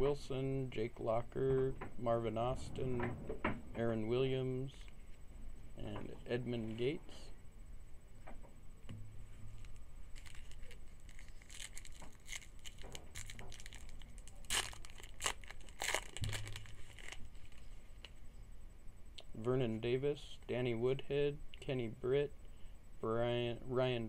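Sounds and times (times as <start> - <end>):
wrapper being torn and crinkled: 9.6 - 18.2.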